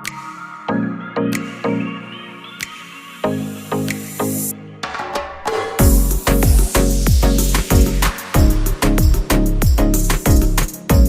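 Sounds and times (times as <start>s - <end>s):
music with bass kick drums: 5.8s - 11.0s.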